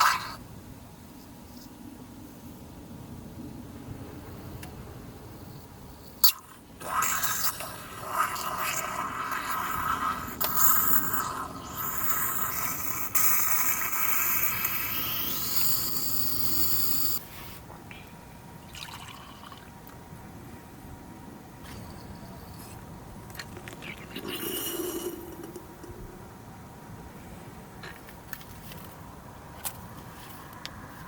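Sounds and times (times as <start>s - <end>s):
liquid running into container: 23.4s - 25.9s.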